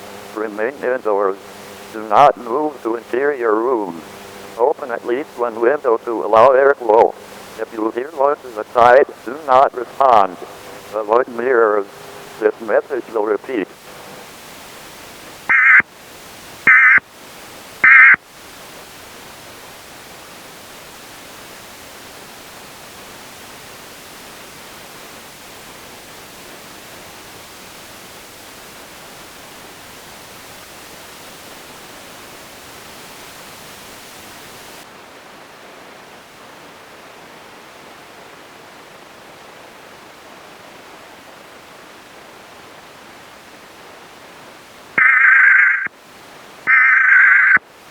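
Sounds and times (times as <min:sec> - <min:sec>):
static hiss: 0:00.0 - 0:47.9
screechy digital data tones: 0:15.5 - 0:15.8, 0:16.7 - 0:17.0, 0:17.8 - 0:18.2, 0:45.0 - 0:45.9, 0:46.7 - 0:47.6.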